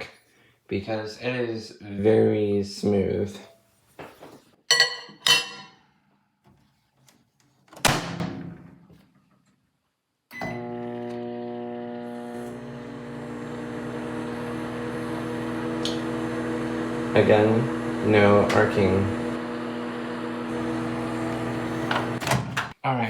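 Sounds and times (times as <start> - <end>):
microwave oven humming: 10.4 - 22.3.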